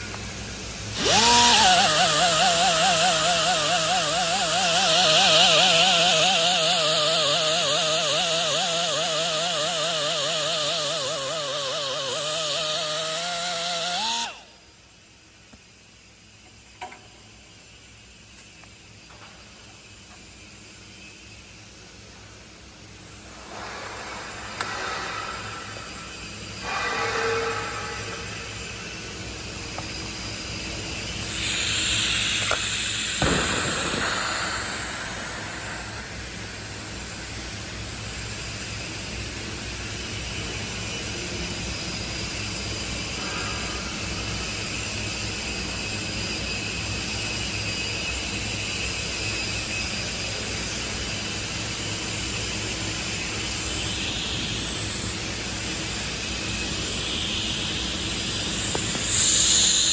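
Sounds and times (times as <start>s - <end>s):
steady hissing noise: 14.6s - 59.9s.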